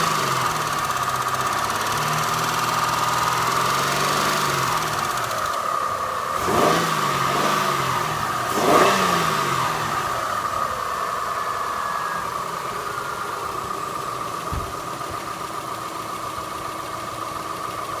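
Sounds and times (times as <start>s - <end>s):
car engine idling and revving: 0.0s - 18.0s
engine lifter tapping: 13.6s - 18.0s.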